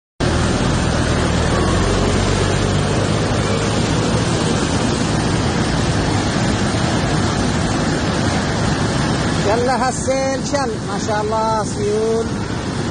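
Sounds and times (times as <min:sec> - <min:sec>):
low hum: 0:00.2 - 0:09.3
heavy rain and floodwater rushing: 0:00.2 - 0:12.9.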